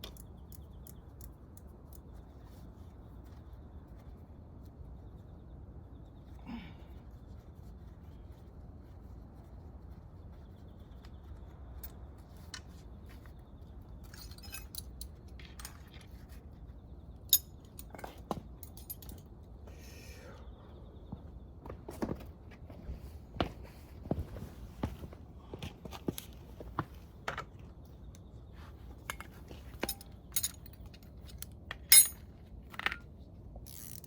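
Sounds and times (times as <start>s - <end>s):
low background hum: 0.0s - 34.0s
metal tools clinking: 14.0s - 16.1s, 17.3s - 19.3s, 29.0s - 33.0s.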